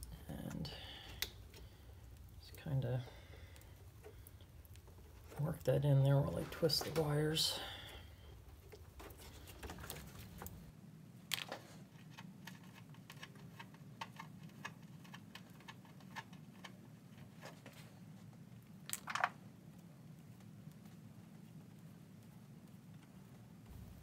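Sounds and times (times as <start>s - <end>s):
clicks and rustles of wire twisting: 0.0s - 10.7s, 11.3s - 24.0s
steady low hum: 23.6s - 24.0s.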